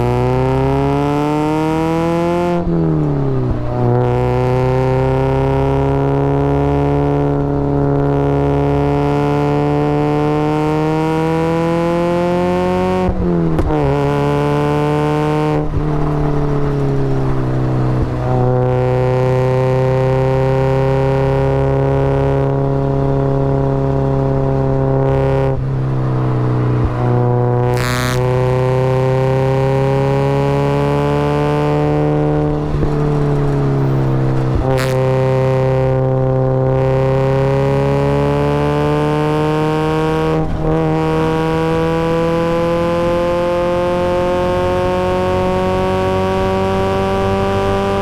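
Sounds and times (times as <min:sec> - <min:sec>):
car engine running hard: 0:00.0 - 0:48.0.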